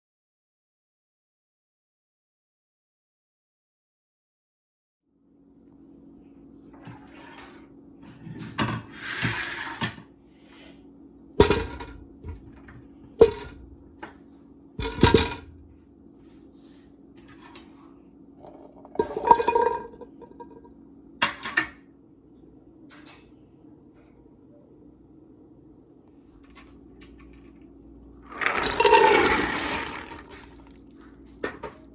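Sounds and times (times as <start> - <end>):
steady low hum: 10.1 - 21.2
pots and dishes clattering: 11.4 - 13.7, 14.8 - 15.6, 18.4 - 21.7, 28.4 - 31.9.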